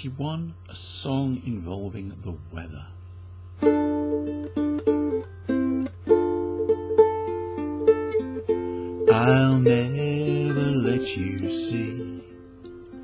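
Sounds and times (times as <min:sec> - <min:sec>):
ukulele chords: 0:03.5 - 0:13.0.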